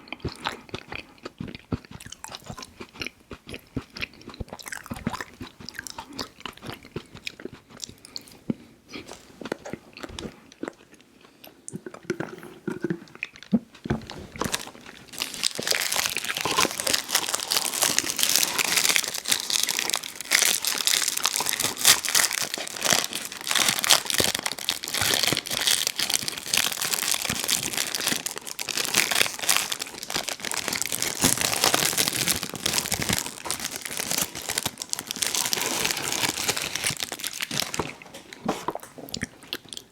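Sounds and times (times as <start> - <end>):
soft chewing and mouth clicks: 0.0 - 17.0, 36.8 - 39.9
loud crunching: 14.0 - 38.0.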